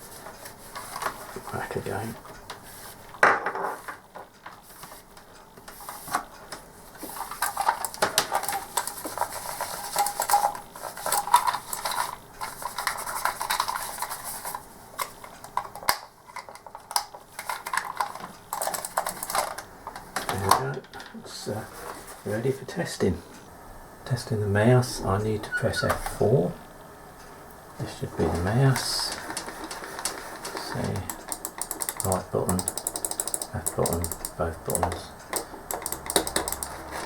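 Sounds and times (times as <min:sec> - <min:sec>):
small clicks and knocks: 0:02.1 - 0:21.2, 0:28.2 - 0:37.0.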